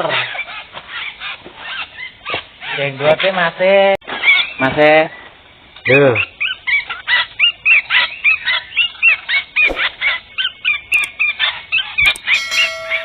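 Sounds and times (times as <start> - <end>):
birds calling harsh notes: 6.2 - 13.0
sharp clicks: 12.0 - 12.3.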